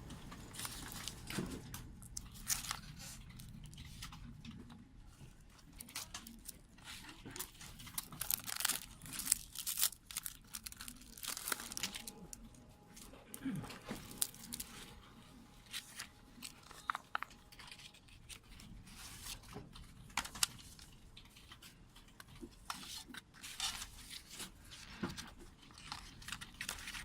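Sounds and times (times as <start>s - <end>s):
wrapping crinkling: 0.3s - 27.0s
package being torn open: 5.8s - 12.4s.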